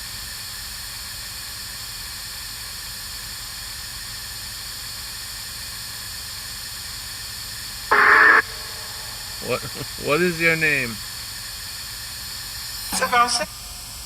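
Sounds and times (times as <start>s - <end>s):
short loud tonal blip: 7.9s - 9.5s
static hiss from phone speaker: 7.9s - 10.5s, 12.6s - 14.0s.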